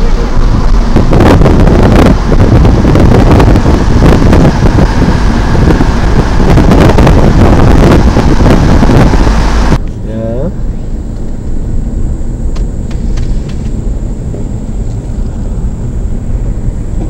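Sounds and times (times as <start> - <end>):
wind buffeting microphone: 0.0 - 9.8.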